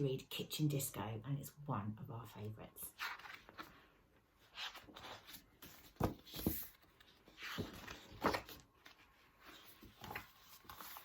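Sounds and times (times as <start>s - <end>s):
soft handling rustling: 2.9s - 11.0s.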